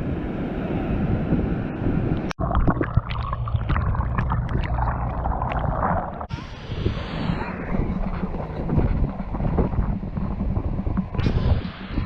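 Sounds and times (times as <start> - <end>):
crackles and splashes: 2.3 - 11.9
low rumble: 3.2 - 12.0
wind buffeting microphone: 5.4 - 12.0
steady low drone: 5.7 - 12.0.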